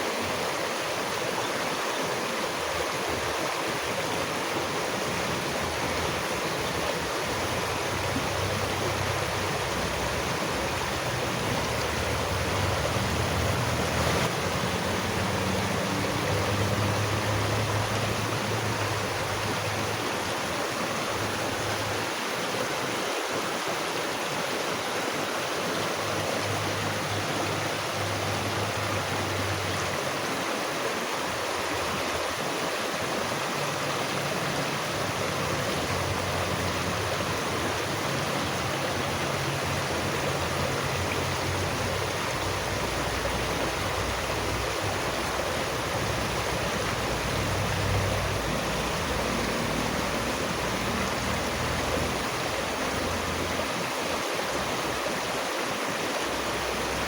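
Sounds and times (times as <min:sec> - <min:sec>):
running water rushing: 0:00.0 - 0:57.0.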